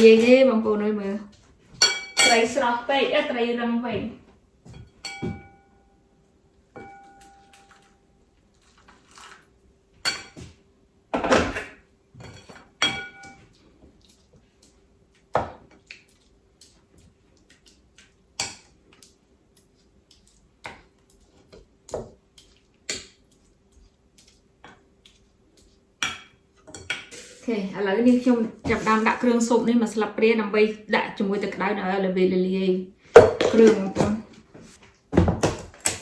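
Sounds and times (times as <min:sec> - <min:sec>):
utensils and dishes clinking: 0:11.2 - 0:13.5.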